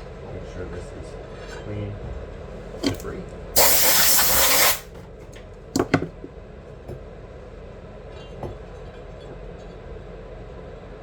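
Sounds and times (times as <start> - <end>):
low background hum: 0.0 - 11.0
tools knocking: 2.8 - 3.0, 5.8 - 6.3.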